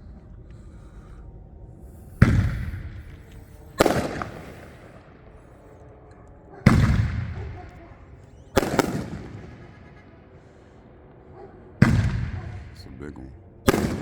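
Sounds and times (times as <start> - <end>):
fireworks exploding: 2.2 - 5.0, 6.7 - 7.8, 8.6 - 10.1, 11.8 - 14.0.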